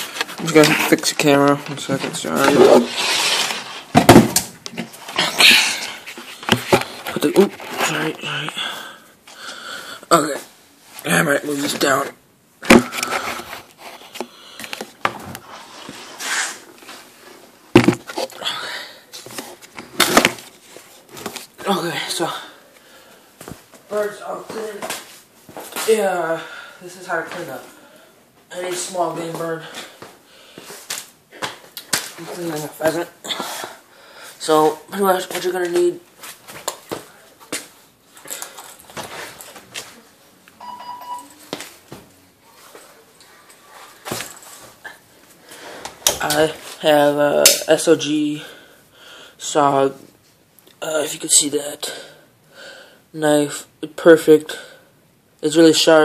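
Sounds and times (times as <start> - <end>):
objects handled on a table: 17.8 - 18.3
short electronic beep: 40.6 - 41.4.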